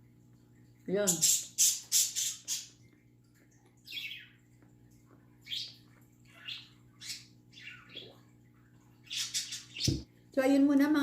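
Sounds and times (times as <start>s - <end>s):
budgerigars chirping: 1.1s - 2.8s, 5.5s - 8.2s, 9.0s - 10.0s.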